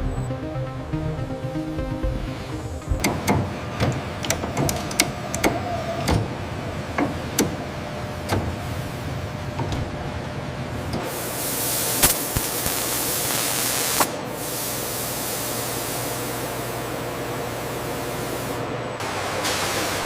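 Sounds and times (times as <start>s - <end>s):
steady hissing noise: 11.0s - 20.0s.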